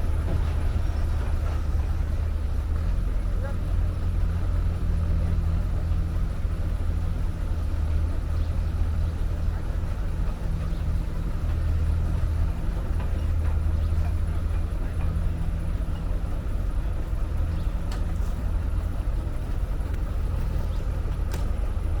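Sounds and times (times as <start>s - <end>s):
diesel engine running: 0.0s - 22.0s
sharp clicks: 21.2s - 21.6s.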